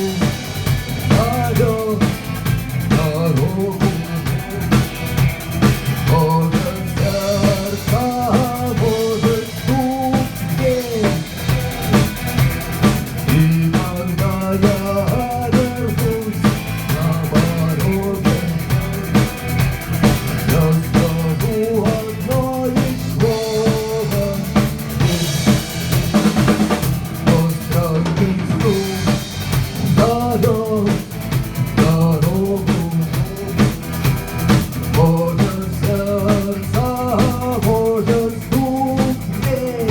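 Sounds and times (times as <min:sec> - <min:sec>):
drum kit beat: 0:00.0 - 0:39.9
rock band playing: 0:00.0 - 0:39.9.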